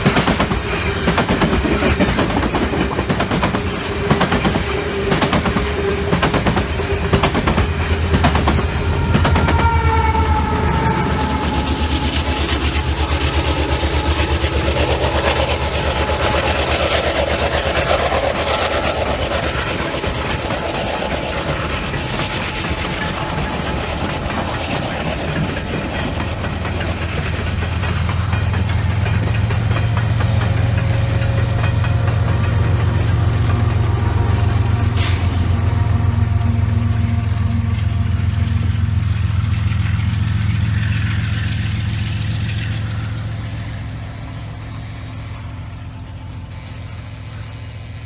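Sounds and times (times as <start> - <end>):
rumble of rolling railcars: 0.0 - 48.0
low diesel engine drone: 4.8 - 48.0
short high hiss: 34.9 - 35.6.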